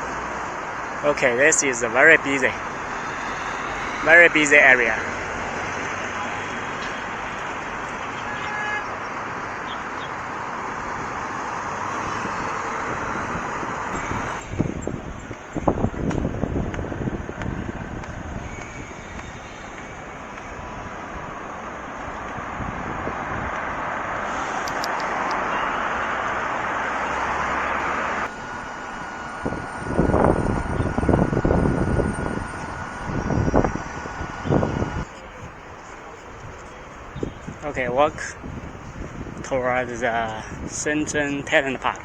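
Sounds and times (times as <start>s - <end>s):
road traffic roar: 0.0s - 42.0s
wind buffeting microphone: 8.8s - 42.0s.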